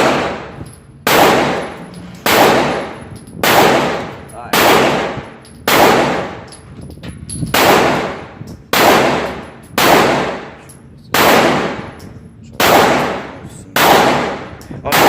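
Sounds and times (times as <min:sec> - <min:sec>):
pistol shots: 0:00.0 - 0:06.5, 0:07.5 - 0:15.0.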